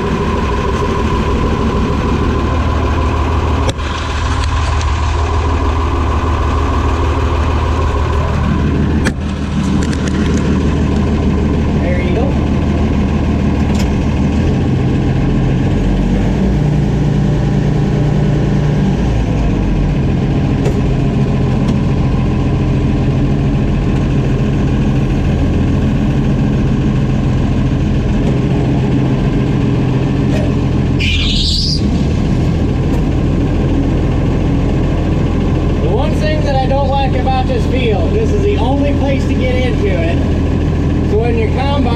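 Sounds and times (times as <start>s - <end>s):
combine engine drone: 0.0s - 41.9s
high rising squeal: 28.4s - 32.8s.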